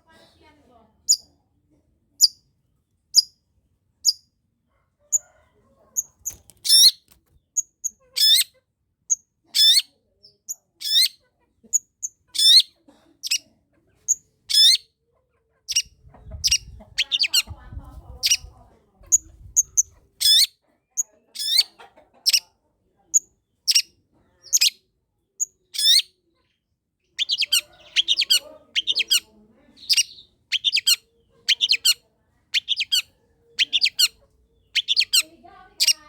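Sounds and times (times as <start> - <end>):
bird chirping: 6.2 - 8.5, 11.8 - 13.4, 14.1 - 14.8, 15.7 - 17.5, 27.2 - 36.0.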